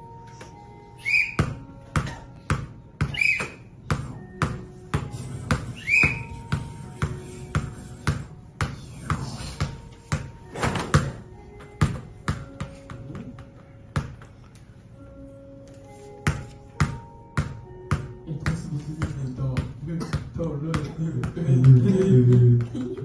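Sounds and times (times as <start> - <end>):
high squawks: 1.0 - 2.3, 3.0 - 3.7, 5.7 - 6.4.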